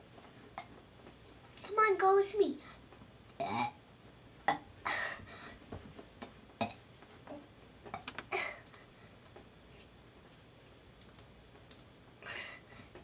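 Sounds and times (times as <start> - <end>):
child attempting burps: 3.4 - 3.8, 4.5 - 5.2, 6.6 - 6.8.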